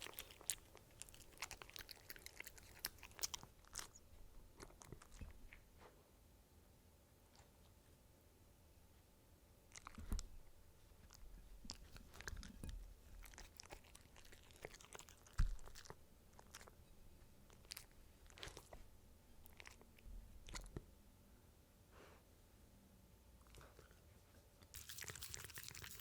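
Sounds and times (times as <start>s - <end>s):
dog chewing and crunching food: 0.0s - 5.7s, 9.7s - 20.9s, 24.6s - 26.0s.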